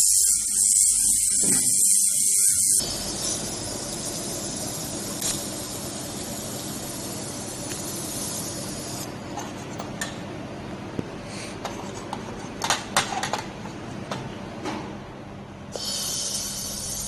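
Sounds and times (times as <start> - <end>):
laser welder hissing: 0.0 - 9.2, 15.7 - 17.0
low machine hum: 2.8 - 17.0.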